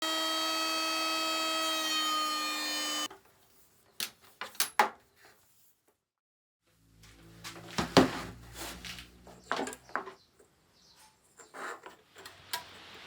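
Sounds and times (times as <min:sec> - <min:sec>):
power tool whine: 0:00.0 - 0:03.1.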